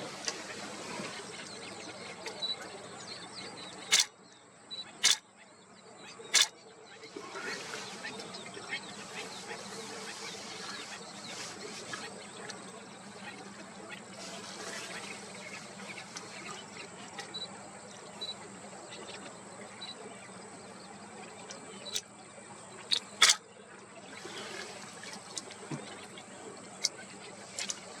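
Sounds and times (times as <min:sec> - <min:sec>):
sharp clicks: 0:03.9 - 0:04.1, 0:05.0 - 0:05.2, 0:06.3 - 0:06.5.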